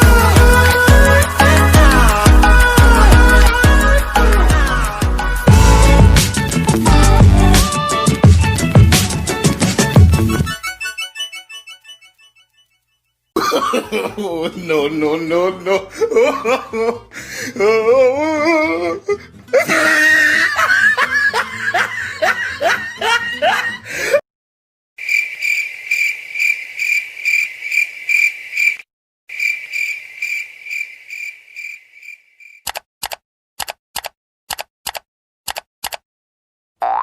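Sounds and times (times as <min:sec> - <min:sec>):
crickets chirping: 0:25.0 - 0:32.6
sharp clicks: 0:32.6 - 0:36.0.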